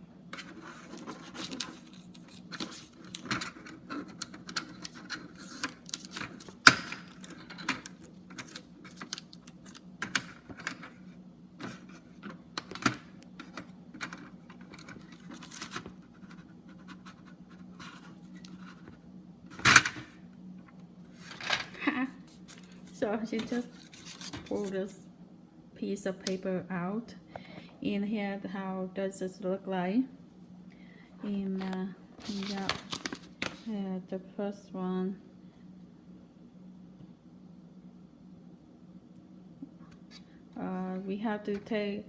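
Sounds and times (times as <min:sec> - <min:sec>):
steady low hum: 0:00.0 - 0:42.0
hands handling plastic and paper: 0:00.4 - 0:11.0, 0:11.6 - 0:19.0, 0:22.3 - 0:24.7, 0:32.2 - 0:33.7.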